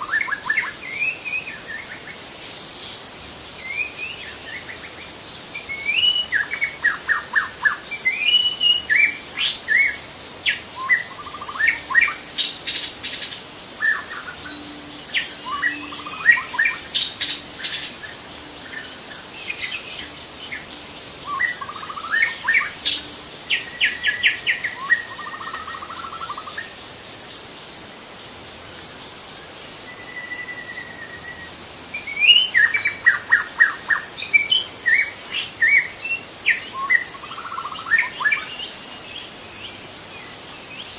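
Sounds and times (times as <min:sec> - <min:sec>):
high insect drone: 0:00.0 - 0:40.9
bird singing whistled phrases: 0:05.6 - 0:18.0, 0:29.9 - 0:38.8.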